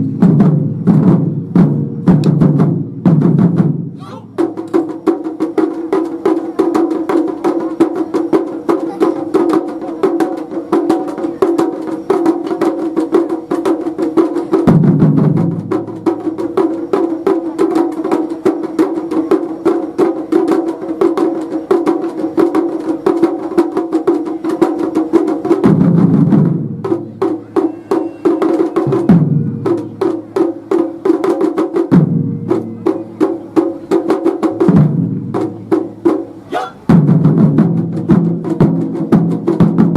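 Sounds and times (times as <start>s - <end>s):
deep big drum strikes: 0.0s - 7.6s, 14.3s - 16.8s, 25.3s - 27.4s, 28.7s - 39.9s
taiko drum ensemble playing: 0.0s - 39.9s.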